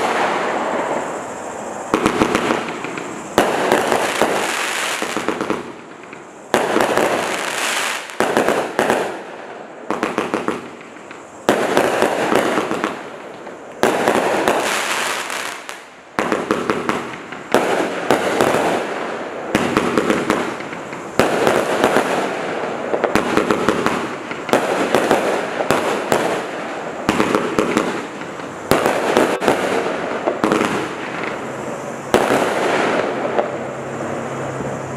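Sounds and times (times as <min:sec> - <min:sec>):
firework cake shots firing: 0:01.8 - 0:31.4, 0:32.1 - 0:33.6.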